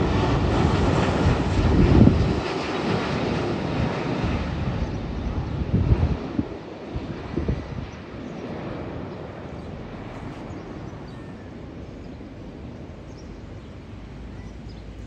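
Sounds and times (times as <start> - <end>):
jet engines rumbling: 0.0 - 15.0
faint bird chirps: 9.6 - 12.3, 13.0 - 15.0.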